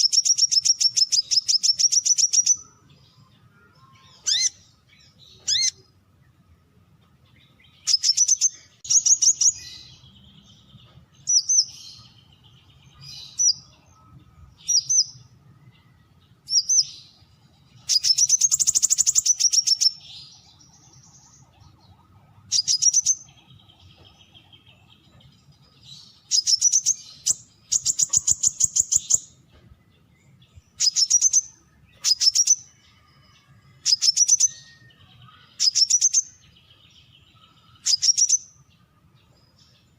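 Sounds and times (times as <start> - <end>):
bird rapid high chirping: 0.0 - 2.8, 3.9 - 6.0, 7.4 - 13.9, 14.6 - 32.9, 33.8 - 38.9.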